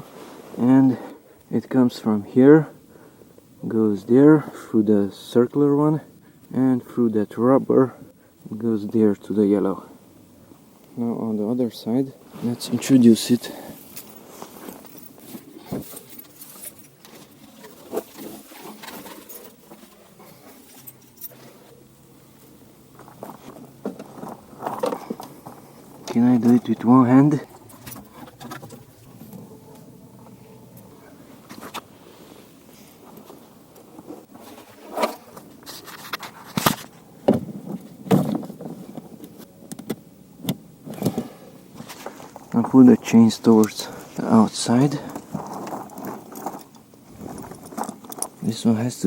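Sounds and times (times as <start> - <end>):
snow chain links rattling: 12.8 - 17.0, 17.7 - 21.5.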